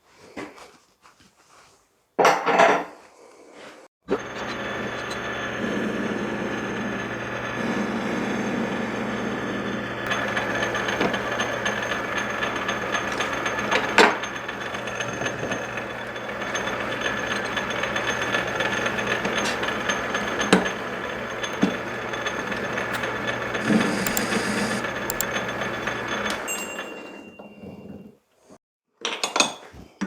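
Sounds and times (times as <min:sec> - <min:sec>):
machine tool humming: 0:22.9 - 0:26.0.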